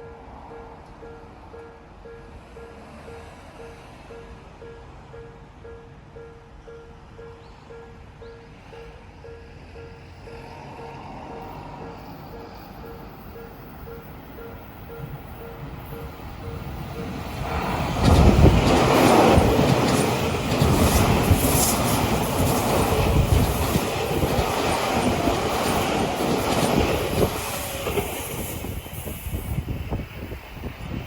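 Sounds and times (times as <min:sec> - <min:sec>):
crossing bell pulsing ring: 0:00.0 - 0:17.4
electric train passing: 0:00.0 - 0:31.0
wheels clattering on rails: 0:10.3 - 0:30.3.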